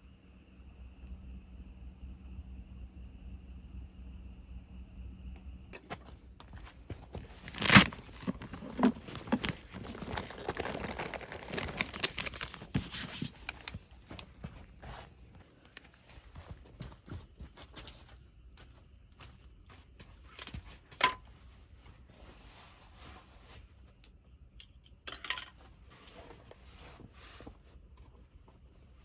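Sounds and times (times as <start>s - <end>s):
packaging rustling and crinkling: 6.5s - 18.2s.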